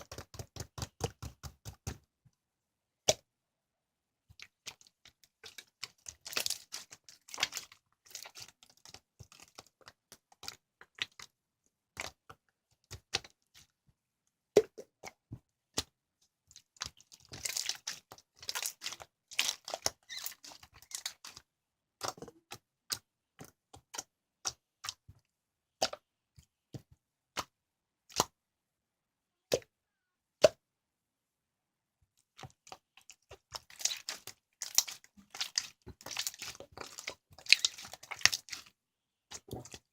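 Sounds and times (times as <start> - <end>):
slime squished by hand: 32.4 - 39.9.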